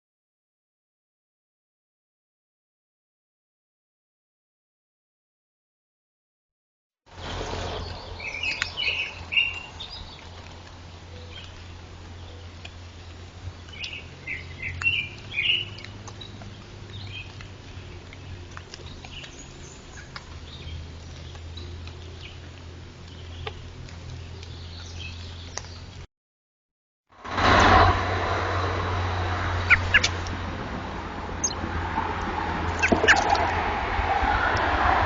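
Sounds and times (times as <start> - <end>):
small birds chirping: 7.1 - 26.1, 28.5 - 30.4, 31.3 - 31.7, 32.6 - 33.5
light ticks: 9.8 - 14.0, 14.6 - 26.0.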